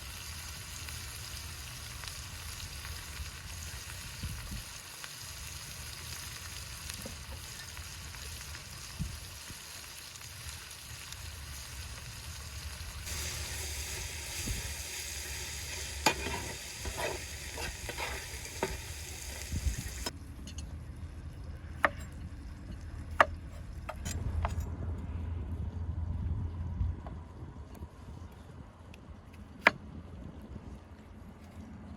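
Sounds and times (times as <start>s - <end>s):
food sizzling in hot oil: 0.0s - 20.1s
low rumble: 24.0s - 28.7s.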